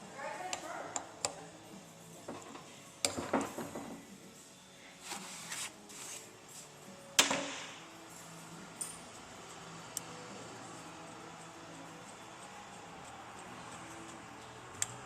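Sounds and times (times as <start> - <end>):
loud metallic knock with ring: 7.2 - 7.8.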